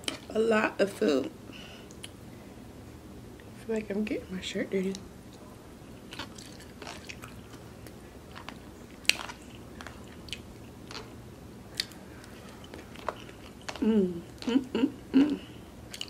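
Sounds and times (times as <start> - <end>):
person chewing with mouth clicks: 6.1 - 11.1, 11.8 - 16.0.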